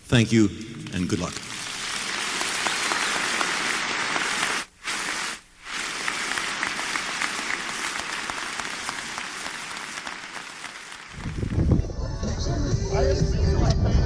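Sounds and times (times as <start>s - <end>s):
audience applauding: 0.8s - 11.8s.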